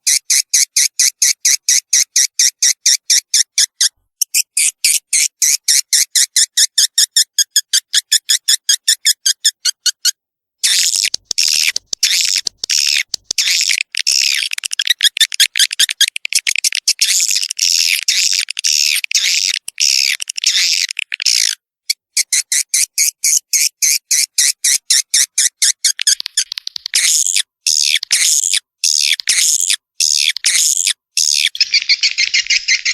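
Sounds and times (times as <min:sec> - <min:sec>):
recorded swiftlet twittering: 0:10.6 - 0:21.4, 0:22.3 - 0:32.9.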